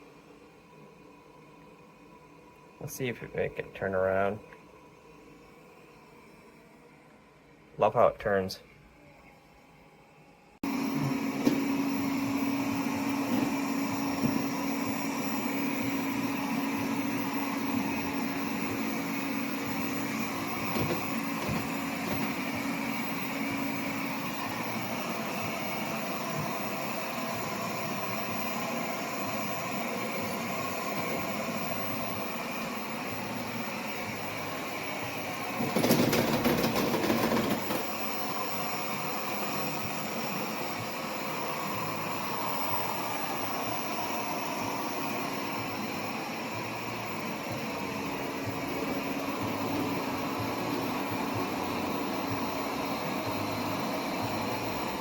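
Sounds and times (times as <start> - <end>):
steady hum: 0.0 - 41.0
robot vacuum whirring: 10.6 - 55.0.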